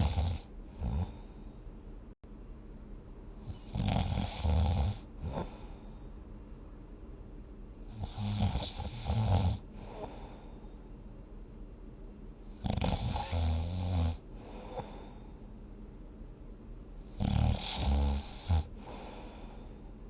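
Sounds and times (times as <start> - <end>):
rattling snores: 0.0 - 1.3, 3.5 - 5.7, 7.9 - 10.2, 12.6 - 15.0, 17.2 - 19.1
quiet breathing: 0.0 - 1.8, 3.3 - 6.3, 7.8 - 11.2, 14.1 - 15.7, 17.0 - 20.0.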